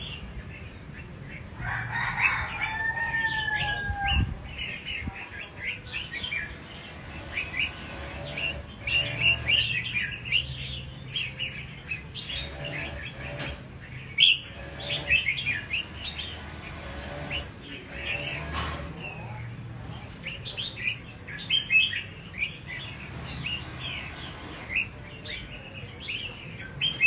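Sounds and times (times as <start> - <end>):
small songbirds chirping: 0.0 - 27.0
high bird trill: 1.6 - 19.3.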